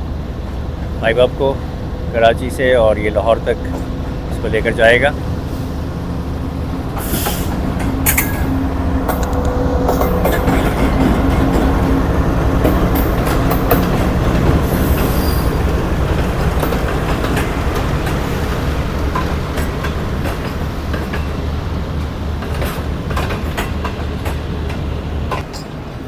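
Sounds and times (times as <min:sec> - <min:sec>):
diesel engine hum: 0:00.0 - 0:25.4
train wheels clicking over rail joints: 0:00.3 - 0:26.0
high wheel squeal: 0:06.9 - 0:13.8, 0:14.4 - 0:15.8.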